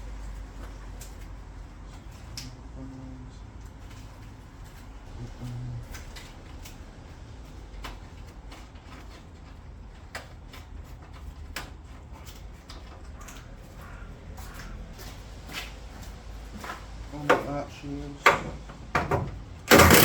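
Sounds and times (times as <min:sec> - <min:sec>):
tools and parts clicking and knocking: 0:18.2 - 0:20.0.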